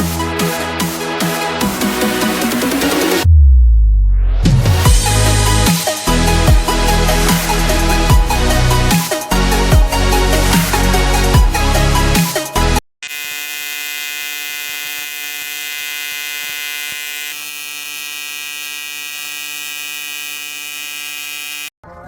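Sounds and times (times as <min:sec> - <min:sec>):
electronic music: 0:00.0 - 0:12.8
welder electric buzz: 0:13.0 - 0:21.8.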